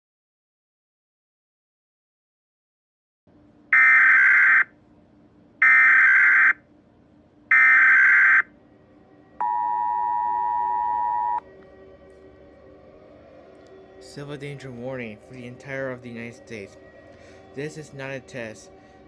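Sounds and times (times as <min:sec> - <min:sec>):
two-tone attention signal: 0:09.4 - 0:11.4.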